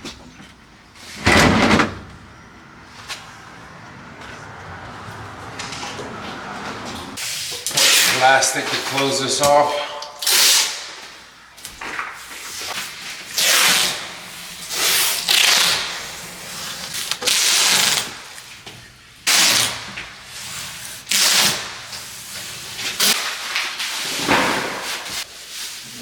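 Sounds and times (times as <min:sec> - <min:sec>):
plastic sheeting crinkling: 0:11.8 - 0:18.6, 0:19.3 - 0:26.0.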